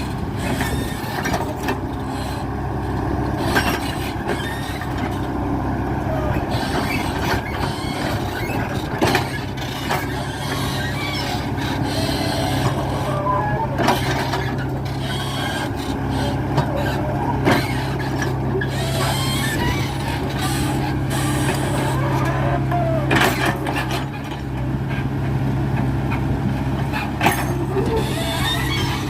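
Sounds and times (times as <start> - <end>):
excavator diesel engine: 0.0 - 29.0
machine squeaks: 3.4 - 5.3, 6.2 - 24.2, 27.0 - 29.0.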